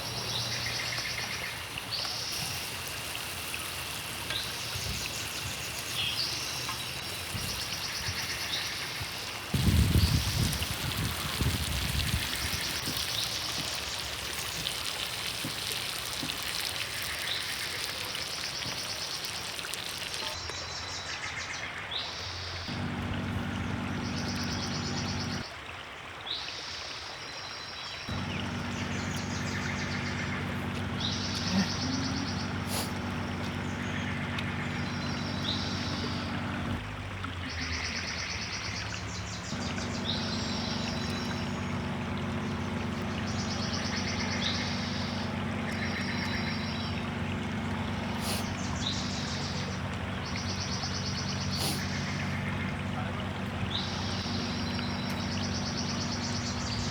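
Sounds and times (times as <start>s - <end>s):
low mechanical hum: 0.0s - 16.4s, 22.7s - 25.5s, 28.1s - 56.9s
river water rushing: 28.1s - 56.9s.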